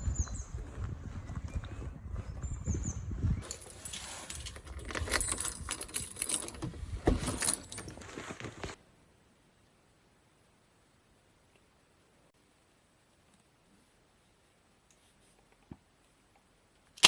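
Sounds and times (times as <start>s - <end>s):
keys jangling: 3.4s - 8.4s.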